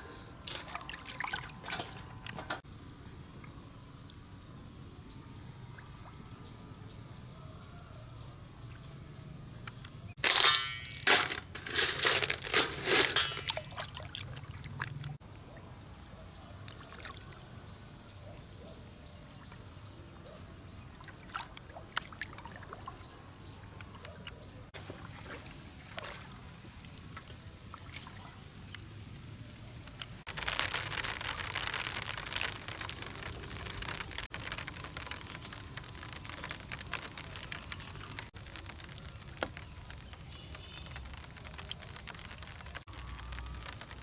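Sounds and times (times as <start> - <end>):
water trickling and splashing: 0.4 - 2.6, 10.2 - 15.2, 20.8 - 24.0, 24.8 - 44.0.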